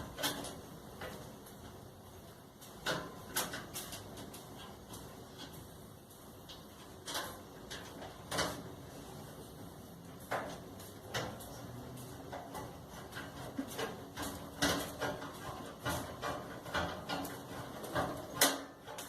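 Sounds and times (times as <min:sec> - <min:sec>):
knocks and scrapes of hand work: 0:12.2 - 0:19.0.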